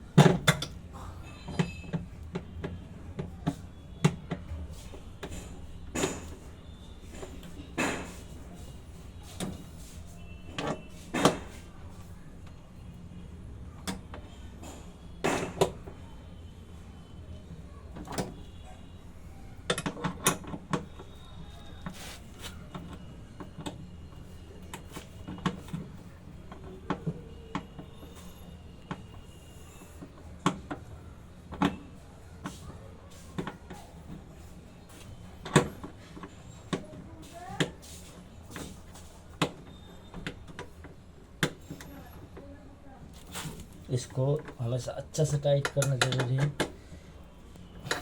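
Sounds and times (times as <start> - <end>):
metal tools knocking and clinking: 45.6 - 46.7.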